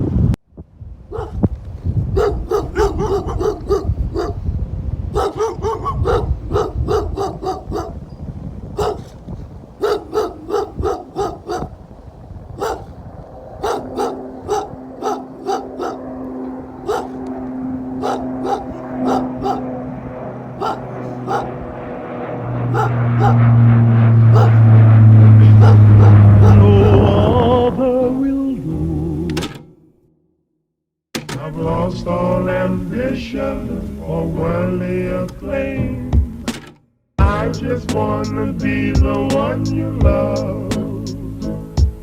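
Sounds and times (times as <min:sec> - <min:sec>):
low wind rumble: 0:00.0 - 0:29.4
dog barking: 0:01.1 - 0:01.5, 0:02.1 - 0:04.5, 0:05.1 - 0:08.0, 0:08.8 - 0:11.8, 0:12.6 - 0:17.3, 0:17.9 - 0:21.7, 0:22.6 - 0:23.6, 0:24.2 - 0:24.8, 0:25.4 - 0:27.4
steady droning hum: 0:08.9 - 0:27.3.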